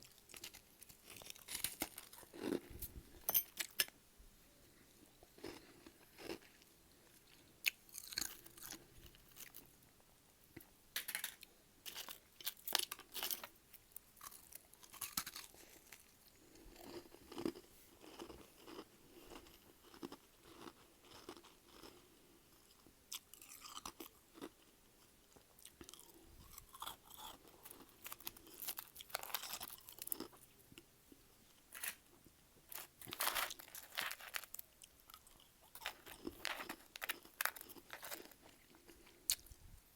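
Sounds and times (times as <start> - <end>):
frost being chewed: 14.2 - 22.0, 31.7 - 39.6.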